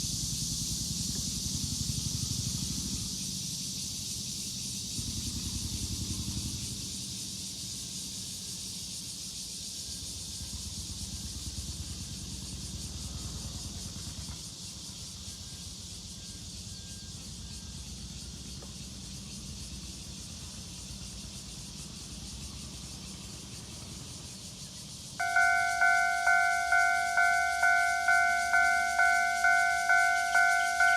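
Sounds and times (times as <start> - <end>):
road traffic rumble: 25.2 - 30.9
steady high hiss: 25.2 - 30.9.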